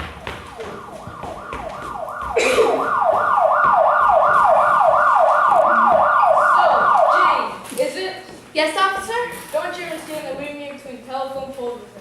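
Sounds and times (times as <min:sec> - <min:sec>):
police siren yelping: 0:00.0 - 0:07.6.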